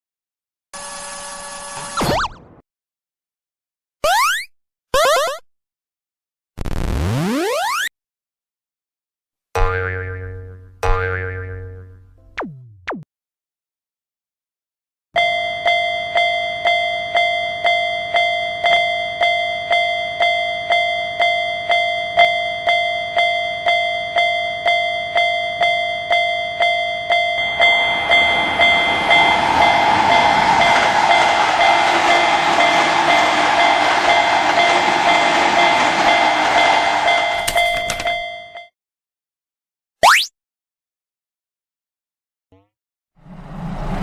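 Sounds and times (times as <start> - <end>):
railroad crossing bell ringing: 15.2 - 38.7
passing train rushing: 26.8 - 38.2, 43.2 - 44.0.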